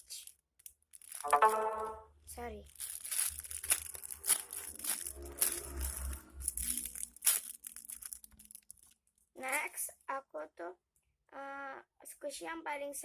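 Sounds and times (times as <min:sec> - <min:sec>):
plastic crinkling and rustling: 0:00.0 - 0:01.3, 0:02.6 - 0:09.8.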